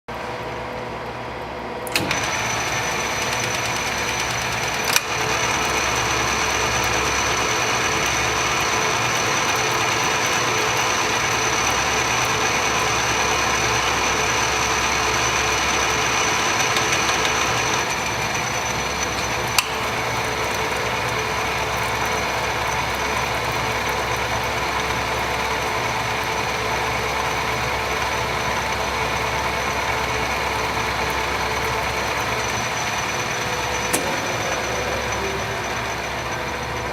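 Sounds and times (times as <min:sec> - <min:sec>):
lathe humming with high whine: 0:00.1 - 0:36.9
sharp click: 0:33.9 - 0:34.3.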